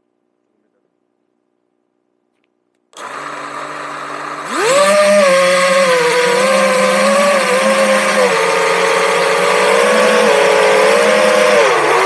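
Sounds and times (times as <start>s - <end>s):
drone motors whining: 3.0s - 12.0s.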